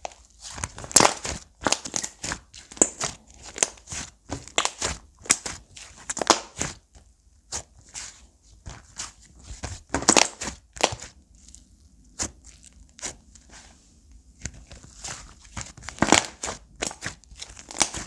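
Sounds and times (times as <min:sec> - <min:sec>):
slime squeezed crackling: 0:00.0 - 0:06.6, 0:14.7 - 0:18.0.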